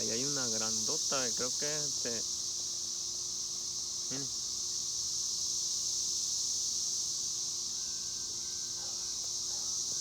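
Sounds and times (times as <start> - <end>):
cicadas buzzing: 0.0 - 10.0.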